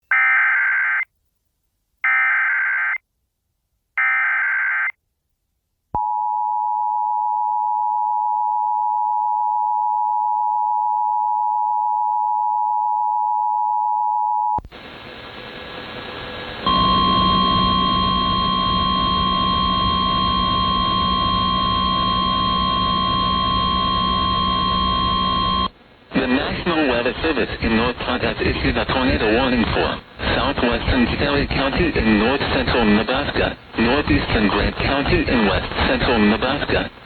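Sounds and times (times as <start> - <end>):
static hiss: 14.6 - 37.0
loud steady tone: 14.8 - 30.8.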